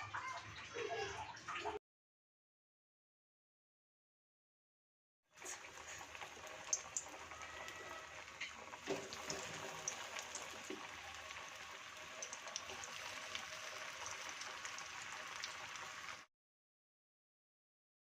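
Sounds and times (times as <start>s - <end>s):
food frying in hot oil: 5.4s - 16.3s.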